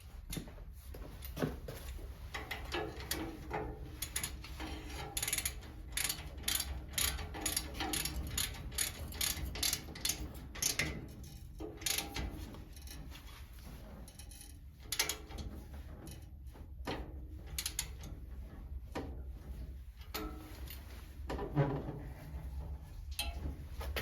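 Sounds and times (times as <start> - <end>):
ratchet wrench clicking: 5.2 - 10.8.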